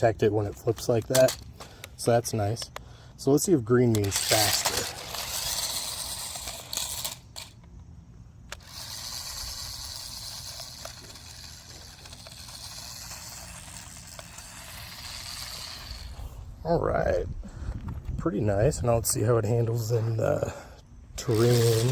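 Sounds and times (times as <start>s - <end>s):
toy motor high whine: 3.9s - 7.7s, 8.5s - 16.5s, 21.2s - 21.9s.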